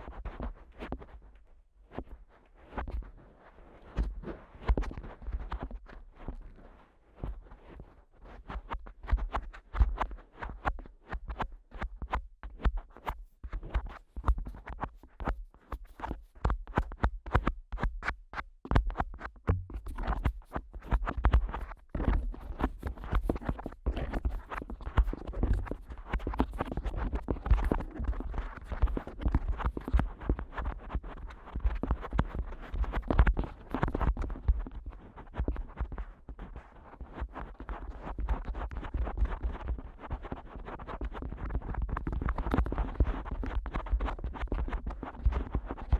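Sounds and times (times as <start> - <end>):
fingers tapping on microphone: 11.1 - 30.7.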